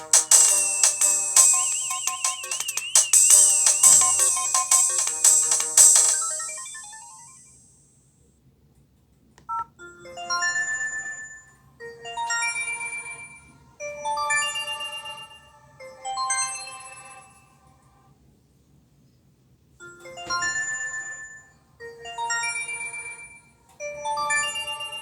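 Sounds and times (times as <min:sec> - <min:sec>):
electronic ringtone melody: 0:00.0 - 0:07.6.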